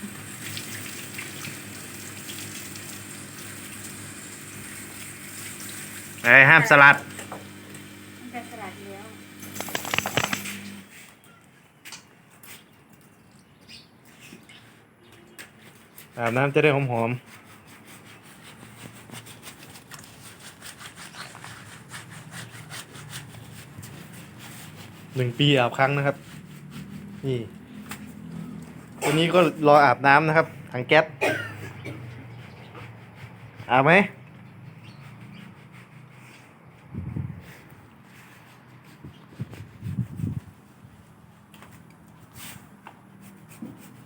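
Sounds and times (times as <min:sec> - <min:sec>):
water running and splashing: 0:00.0 - 0:08.2
hands scrubbing wet fur: 0:08.3 - 0:11.1, 0:15.5 - 0:30.6, 0:32.2 - 0:44.0.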